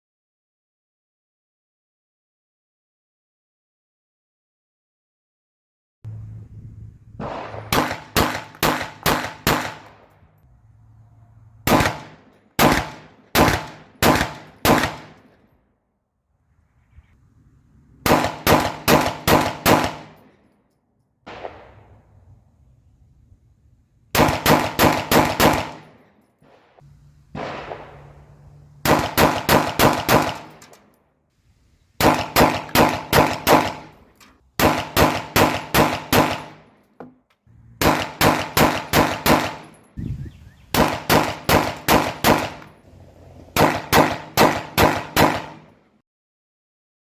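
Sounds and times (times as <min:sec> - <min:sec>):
pistol firing rapid shots: 0:07.2 - 0:10.1, 0:11.7 - 0:15.3, 0:18.0 - 0:20.2, 0:24.2 - 0:30.8, 0:32.0 - 0:33.9, 0:34.6 - 0:36.7, 0:37.8 - 0:39.7, 0:40.7 - 0:42.8, 0:43.5 - 0:45.7.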